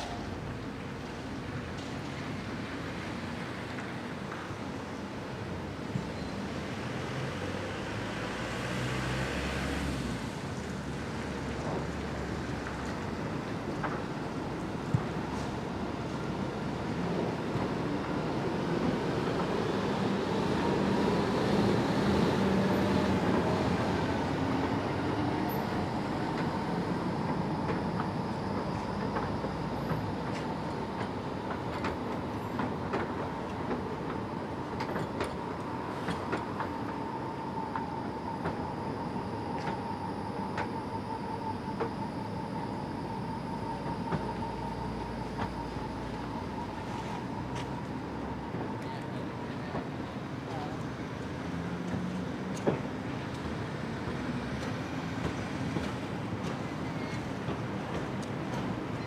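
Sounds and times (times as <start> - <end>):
tram running on track: 0.0 - 59.0
faint high whine: 20.9 - 50.8.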